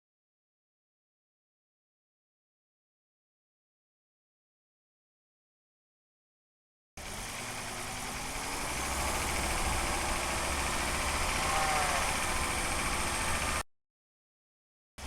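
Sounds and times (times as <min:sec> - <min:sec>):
car engine accelerating: 0:07.0 - 0:13.6
gear whine: 0:07.0 - 0:13.6.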